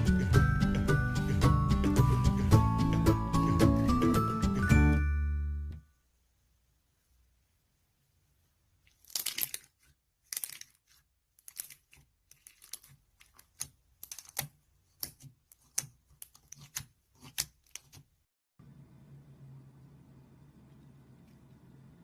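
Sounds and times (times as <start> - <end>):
slime clicking and crackling: 9.0 - 18.0
low steady hum: 18.6 - 22.0.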